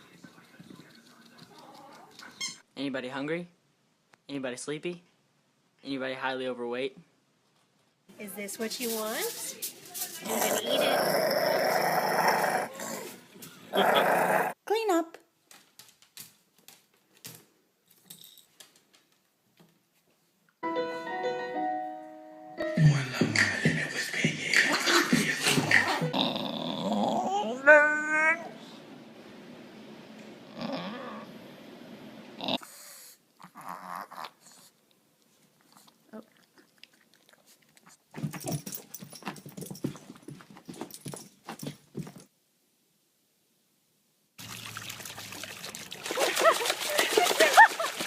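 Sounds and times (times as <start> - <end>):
music with held instrument notes: 20.6 - 23.3.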